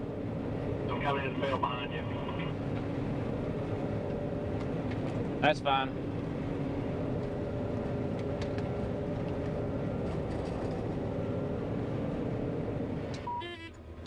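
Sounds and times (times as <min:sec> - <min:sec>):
combine engine and separator drone: 0:00.0 - 0:14.0
short beep: 0:13.3 - 0:13.7.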